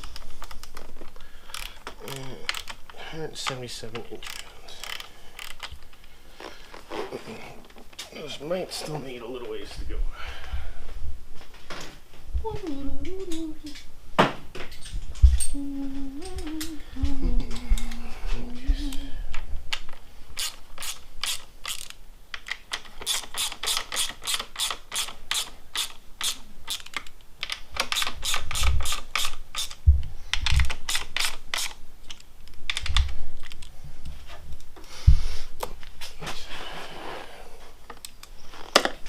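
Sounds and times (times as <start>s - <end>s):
torque wrench ratcheting clicks: 4.1s - 5.7s, 20.4s - 22.0s, 23.0s - 27.0s.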